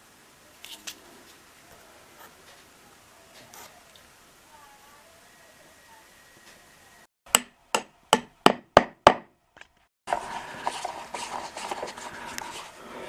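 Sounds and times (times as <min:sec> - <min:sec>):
rough scraping with clicks: 0:09.6 - 0:12.7.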